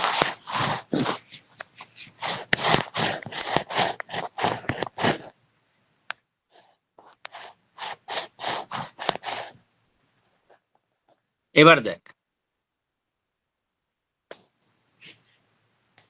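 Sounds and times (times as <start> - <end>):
rhythmic scraping strokes: 0.0 - 5.3.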